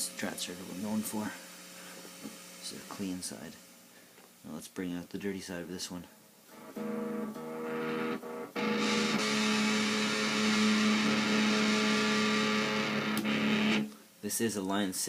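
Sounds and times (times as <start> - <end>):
distorted electric guitar chord: 6.6 - 13.9.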